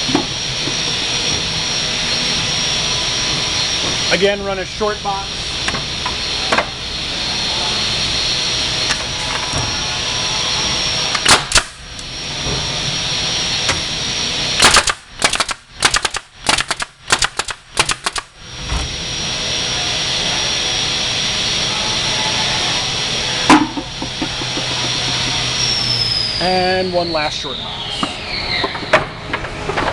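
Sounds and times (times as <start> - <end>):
rapid sharp nail gun shots: 11.2 - 11.8, 14.6 - 18.4.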